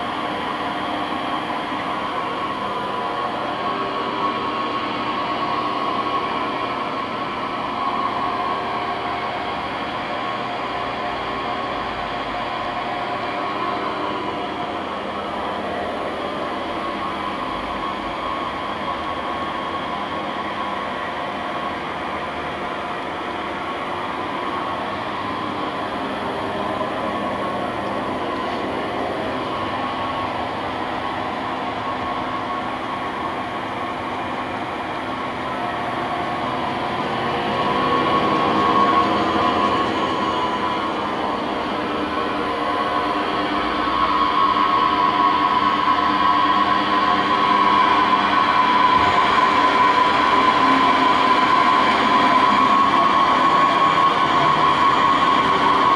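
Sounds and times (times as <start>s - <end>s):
lathe humming: 24.0s - 55.9s.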